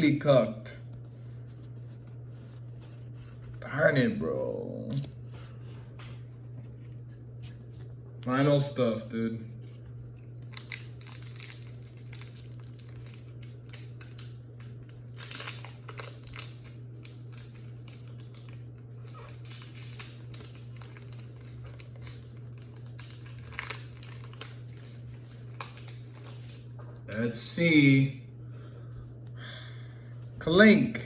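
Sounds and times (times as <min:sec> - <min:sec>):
foil wrapper crinkling: 0:09.6 - 0:27.0
cards rustling: 0:15.0 - 0:27.0.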